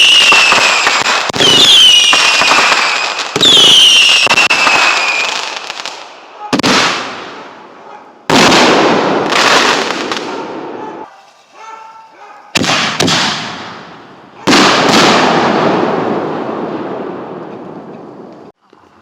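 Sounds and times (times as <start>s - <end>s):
fireworks bangs: 0.0s - 11.5s, 12.5s - 18.6s.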